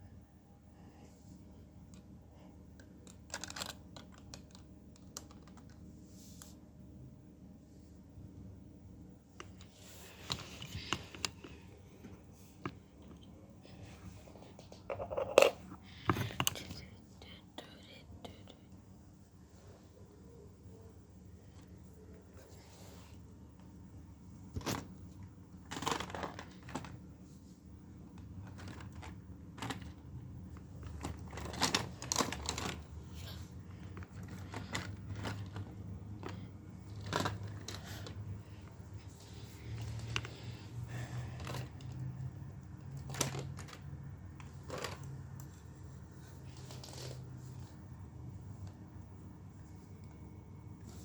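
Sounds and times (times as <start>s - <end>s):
low steady hum: 0.0s - 51.0s
plastic bricks clicking and rattling: 2.8s - 5.8s.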